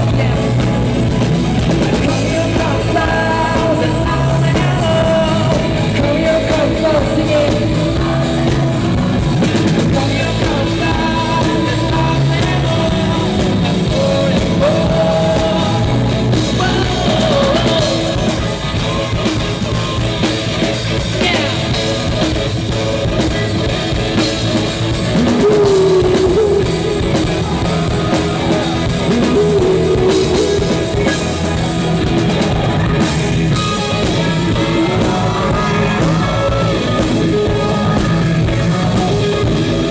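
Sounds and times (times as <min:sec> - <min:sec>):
person singing: 0:00.0 - 0:22.4, 0:24.9 - 0:39.9
rock band playing live: 0:00.0 - 0:39.9.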